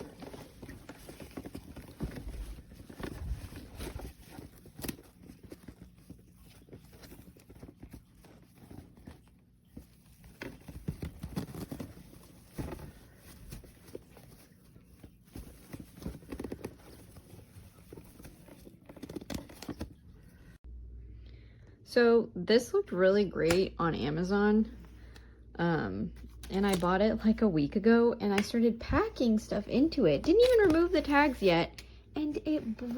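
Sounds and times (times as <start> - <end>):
rustling: 0.0 - 20.6, 28.4 - 32.9.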